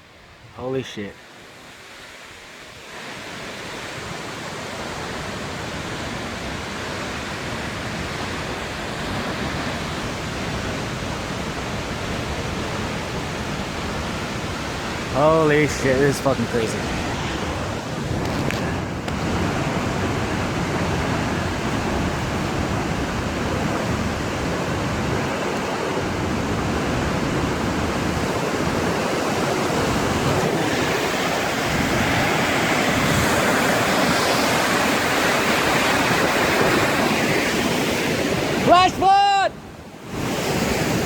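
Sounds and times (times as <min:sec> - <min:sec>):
roar of churning water: 0:16.8 - 0:38.6.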